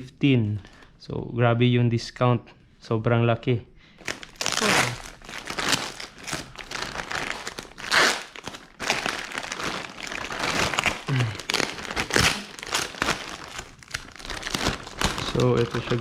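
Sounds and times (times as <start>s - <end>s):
packaging crinkling: 4.0s - 16.0s.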